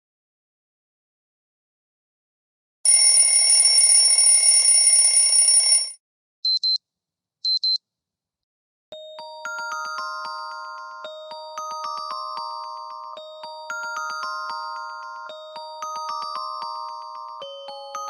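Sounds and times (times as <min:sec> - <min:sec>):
harsh buzzing phone alarm: 0:02.9 - 0:06.0
quick double beeps: 0:06.5 - 0:06.8, 0:07.5 - 0:07.8
mallet-like chime tune: 0:09.0 - 0:18.0.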